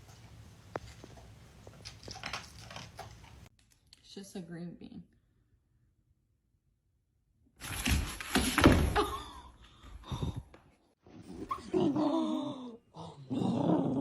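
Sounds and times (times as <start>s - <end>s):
dog growling and snarling: 13.2s - 14.0s.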